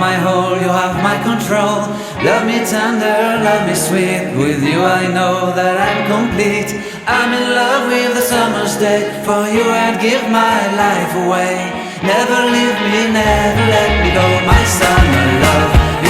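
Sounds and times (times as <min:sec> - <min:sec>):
person singing: 0:00.0 - 0:16.0
instrumental chords bass and beat: 0:13.2 - 0:16.0.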